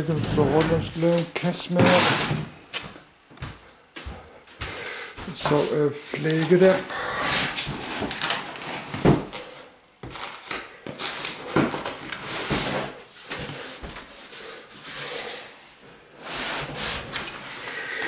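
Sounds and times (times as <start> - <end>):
cardboard rubbing and scraping: 0.0 - 1.2.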